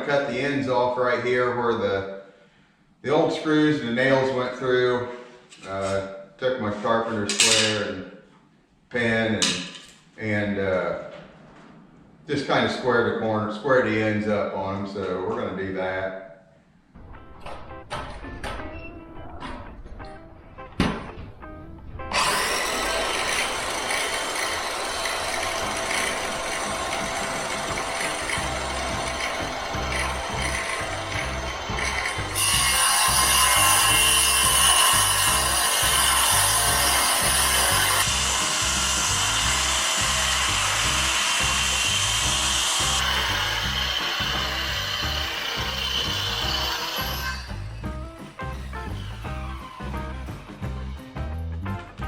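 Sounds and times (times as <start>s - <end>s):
circular saw cutting wood: 22.1s - 51.4s.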